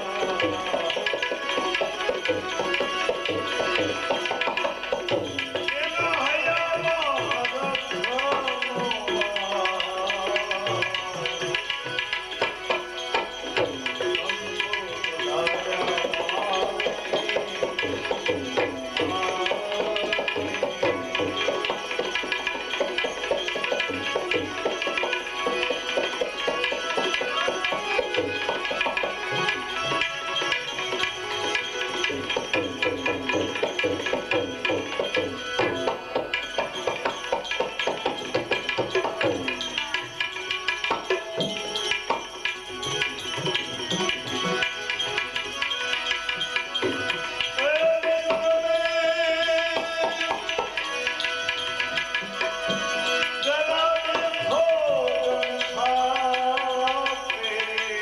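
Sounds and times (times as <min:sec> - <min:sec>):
tabla rhythm: 0:00.0 - 0:58.0.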